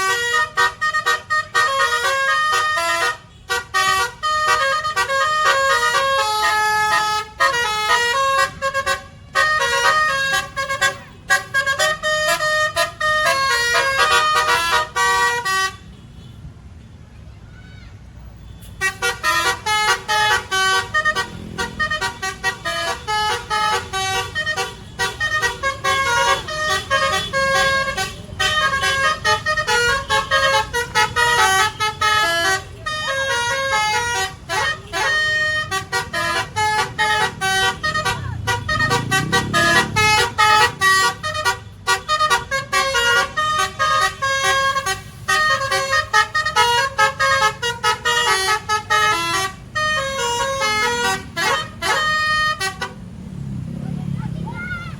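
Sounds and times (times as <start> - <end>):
multi-tone musical bus horn: 0.0 - 17.0, 18.2 - 53.8
low vehicle rumble: 17.3 - 54.9.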